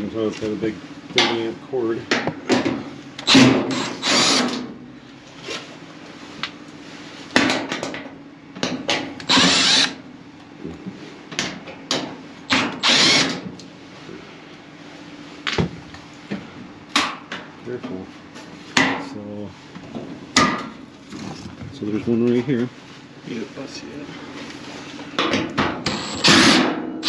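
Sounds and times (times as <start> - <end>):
cordless drill spinning screws: 3.2 - 4.6, 9.3 - 10.0, 12.5 - 13.4, 25.9 - 26.6.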